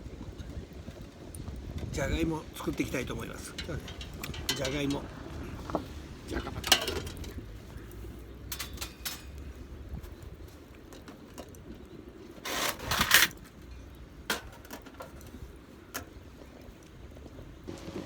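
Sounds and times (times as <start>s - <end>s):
cooking gear clicks and knocks: 0.4s - 18.0s
scraping or rustling burst: 12.4s - 13.4s.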